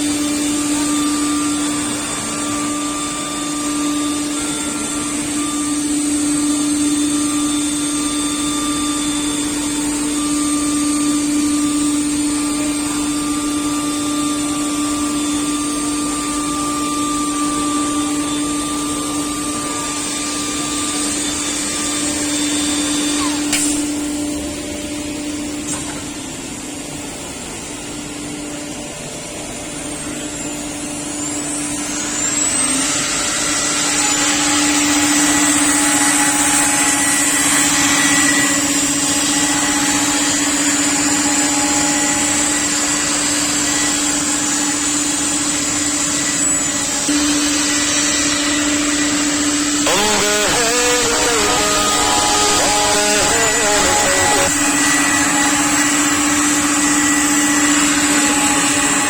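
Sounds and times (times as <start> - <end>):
cnc router running: 0.0 - 59.0
sharp click: 23.5 - 23.9.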